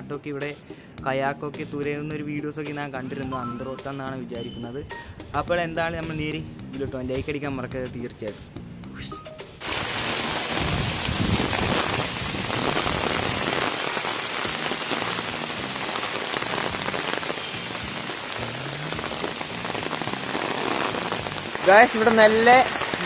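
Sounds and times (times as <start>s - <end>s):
heavy rain falling: 9.6s - 23.0s.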